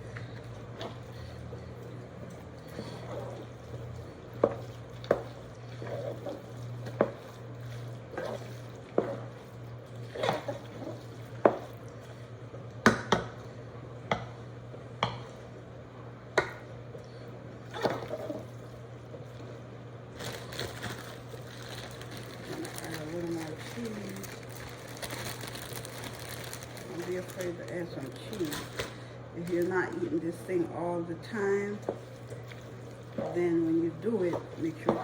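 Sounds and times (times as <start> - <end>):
wet squishing: 0.0 - 13.5, 16.4 - 30.1, 31.7 - 35.0
steady low hum: 0.0 - 35.0
spoon stirring thick macaroni: 0.1 - 12.3, 31.8 - 35.0.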